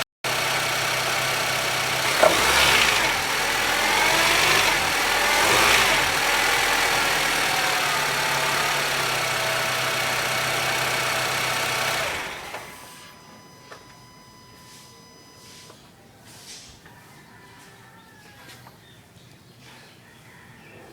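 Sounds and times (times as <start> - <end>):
car engine idling: 0.2 - 13.2.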